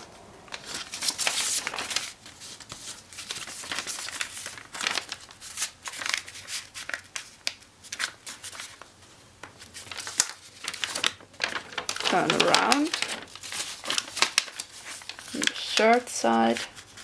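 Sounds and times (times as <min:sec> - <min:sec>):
paper rustling and crinkling: 0:00.0 - 0:17.0
fingers scraping along paper fold: 0:09.7 - 0:17.0.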